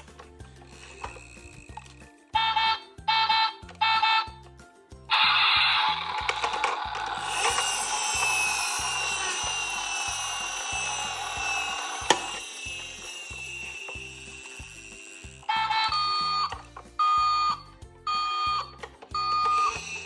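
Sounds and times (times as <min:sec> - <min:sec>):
toy cars rattling down slope: 0:00.0 - 0:02.1, 0:05.1 - 0:16.9, 0:18.8 - 0:20.0.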